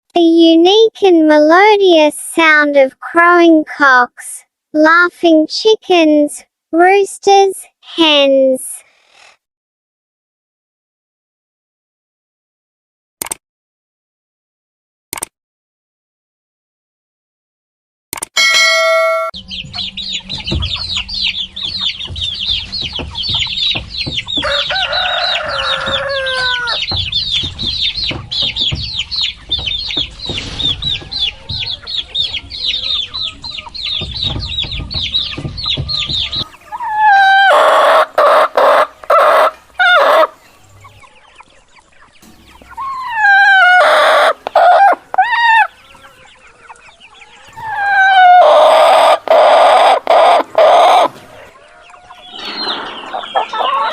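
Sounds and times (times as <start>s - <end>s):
chicks peeping: 19.3s - 53.9s
hen clucking: 19.4s - 53.9s
rooster crowing: 24.4s - 26.8s.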